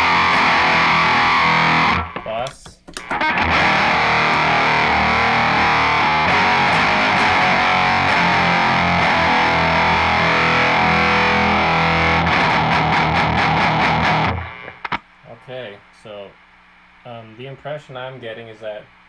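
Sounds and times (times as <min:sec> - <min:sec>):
distorted electric guitar riff: 0:00.0 - 0:15.0.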